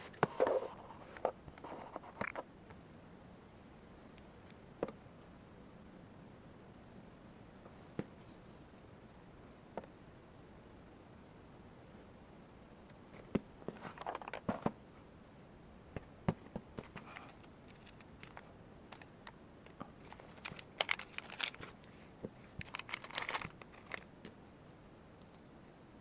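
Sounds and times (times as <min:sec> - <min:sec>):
small parts clicking and tapping: 0:16.5 - 0:21.7, 0:22.6 - 0:24.4
bag crinkling: 0:20.0 - 0:21.8, 0:22.6 - 0:24.1.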